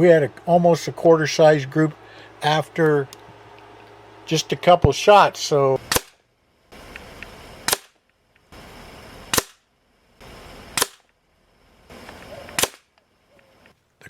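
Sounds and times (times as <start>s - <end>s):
background hiss: 0.0s - 14.0s
air rifle shots: 5.8s - 11.1s, 11.9s - 12.9s.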